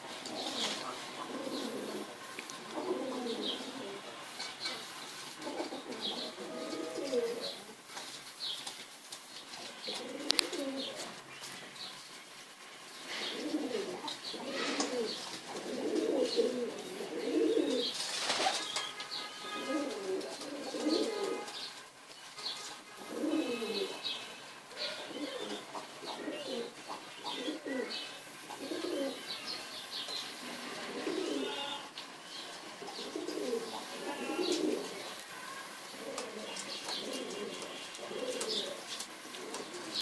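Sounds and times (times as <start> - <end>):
pigeons cooing: 0.0 - 7.8, 9.6 - 11.6, 13.0 - 21.7, 22.5 - 40.0
small birds chirping: 0.3 - 19.7, 20.4 - 40.0
wings fluttering: 17.9 - 19.1.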